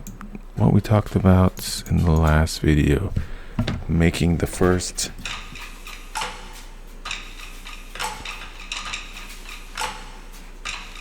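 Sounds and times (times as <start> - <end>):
faint low hum: 0.0 - 5.6.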